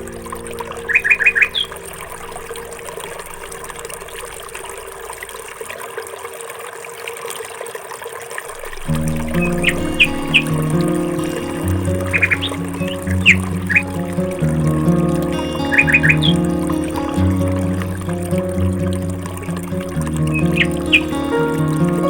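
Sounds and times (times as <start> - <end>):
bird chirping: 0.0 - 3.8, 9.1 - 14.4, 15.4 - 17.5, 20.0 - 22.0
water trickling: 0.0 - 22.0.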